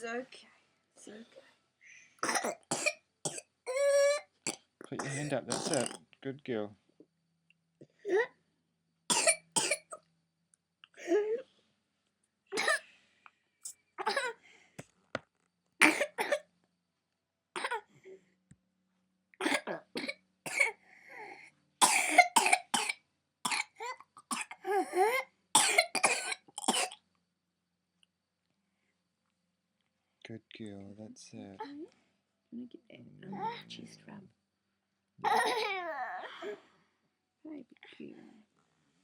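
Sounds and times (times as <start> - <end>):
toddler coughing: 2.2 - 4.2, 5.0 - 5.9, 9.1 - 10.0, 12.6 - 12.8, 14.0 - 14.3, 15.8 - 16.4, 19.4 - 20.7, 21.8 - 22.9, 23.5 - 26.9, 35.2 - 35.9.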